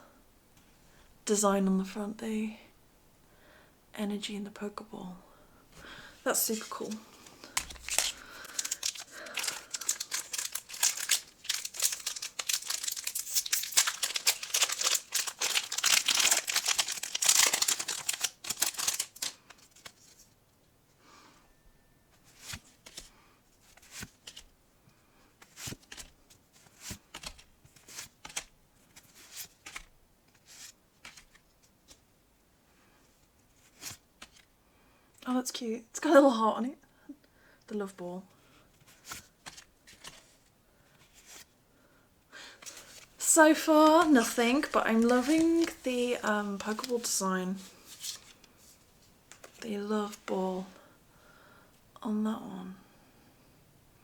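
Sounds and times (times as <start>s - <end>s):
trading cards clicking and sliding: 6.5s - 20.0s
foil wrapper tearing and crinkling: 7.5s - 20.0s.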